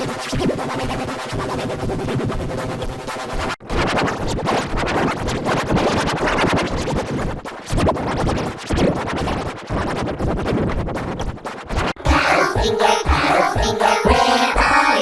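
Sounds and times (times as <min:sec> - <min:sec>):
distorted stuttering remix music: 0:00.0 - 0:15.0.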